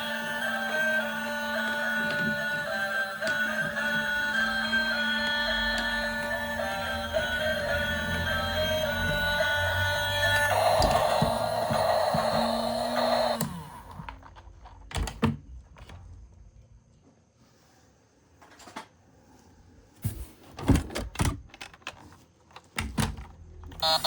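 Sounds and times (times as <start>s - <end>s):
background music: 0.0s - 13.6s
plastic toy vehicles clicking: 21.2s - 24.0s.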